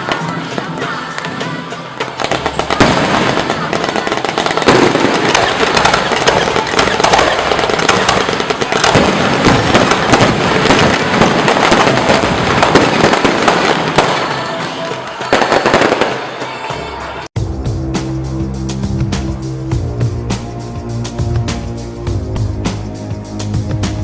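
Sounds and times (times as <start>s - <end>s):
fireworks bangs and crackles: 0.0s - 17.3s.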